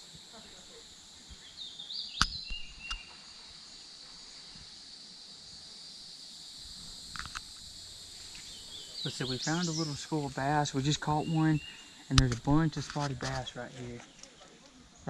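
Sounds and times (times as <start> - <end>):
high-pitched insect chorus: 0.0 - 15.0
sharp clicks: 2.2 - 3.1, 12.1 - 13.4.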